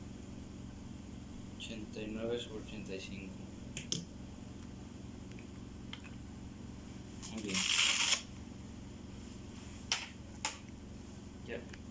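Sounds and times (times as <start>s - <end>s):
velcro strap tearing open: 7.2s - 8.3s.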